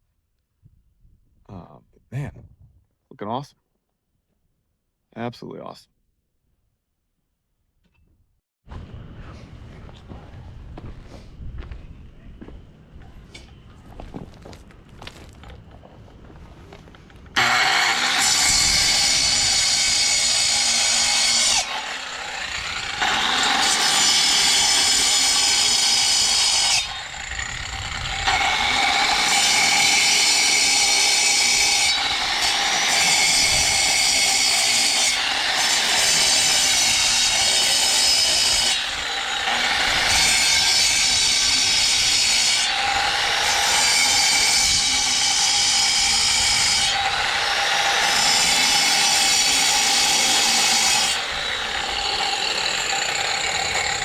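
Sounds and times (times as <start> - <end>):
angle grinder cutting: 17.4 - 54.0.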